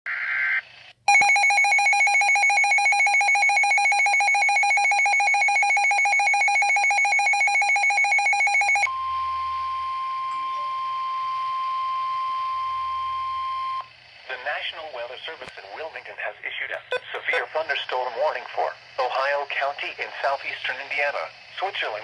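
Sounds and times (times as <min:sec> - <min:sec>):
pulsing electronic alarm tone: 0:01.1 - 0:13.9
burst of data-like noise: 0:13.8 - 0:22.0.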